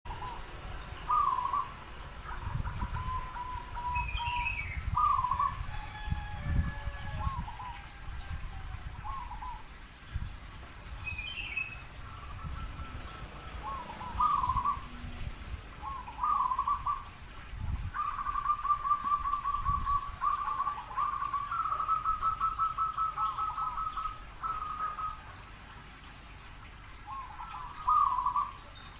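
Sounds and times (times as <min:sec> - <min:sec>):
dove cooing: 0:01.1 - 0:07.8, 0:13.6 - 0:15.1, 0:15.8 - 0:17.1, 0:17.9 - 0:25.3, 0:27.1 - 0:28.6.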